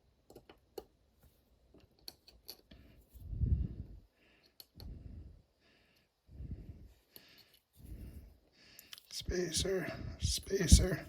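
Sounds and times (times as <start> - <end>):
small metal lock parts clicking: 1.8 - 2.8.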